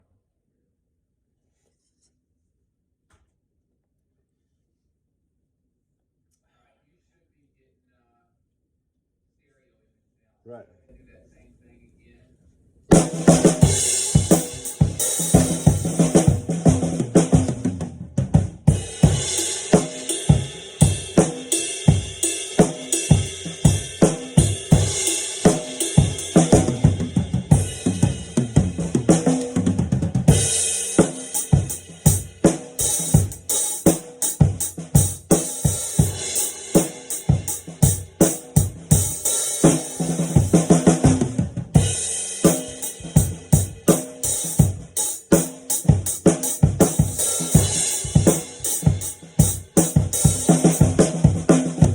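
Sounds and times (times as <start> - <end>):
drum kit playing: 12.9 - 51.9.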